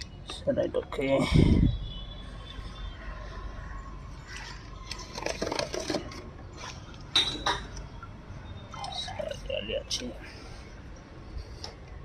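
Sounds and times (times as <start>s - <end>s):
objects knocking and scraping: 4.4s - 7.8s.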